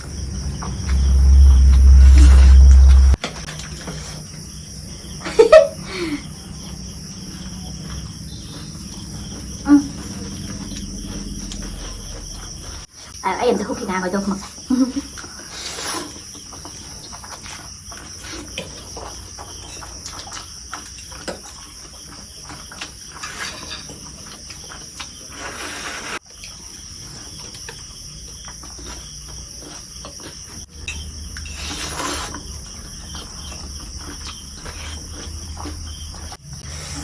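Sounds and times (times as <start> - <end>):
crickets chirring: 0.0 - 37.0
slurping noodles: 15.3 - 18.5, 25.0 - 26.2, 31.4 - 32.5, 34.0 - 37.0
chewing clicks: 26.3 - 37.0.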